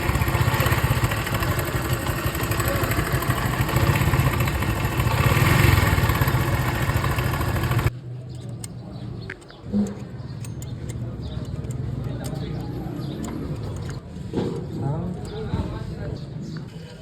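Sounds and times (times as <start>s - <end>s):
motorcycle engine idling: 0.0s - 8.8s, 10.0s - 14.0s.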